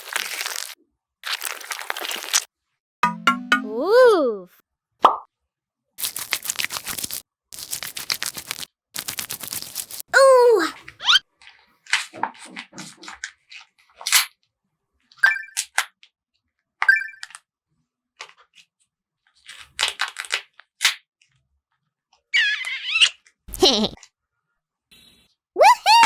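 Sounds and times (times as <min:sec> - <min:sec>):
paper clicks and crinkles: 0:00.0 - 0:02.5, 0:06.0 - 0:10.1, 0:18.2 - 0:20.8
squeaky chirps: 0:22.4 - 0:23.2.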